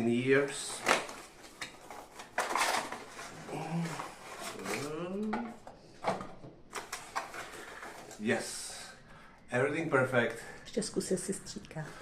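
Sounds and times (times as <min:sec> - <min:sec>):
packaging being handled and opened: 0:00.4 - 0:05.4, 0:06.2 - 0:08.5.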